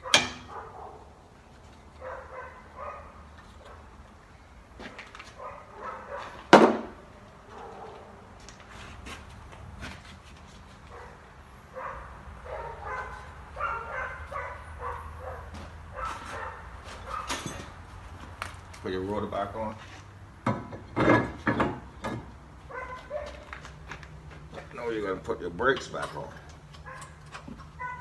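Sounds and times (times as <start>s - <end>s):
dog barking: 0.0s - 1.0s, 2.0s - 3.9s, 5.4s - 6.4s, 7.5s - 8.0s, 10.9s - 17.4s, 22.7s - 23.5s, 26.8s - 27.2s, 27.8s - 28.0s.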